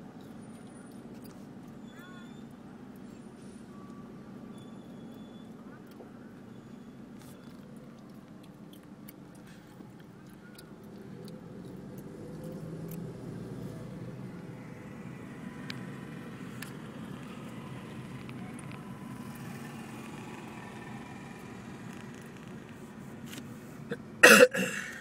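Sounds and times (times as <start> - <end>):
motor vehicle running: 6.5 - 24.2.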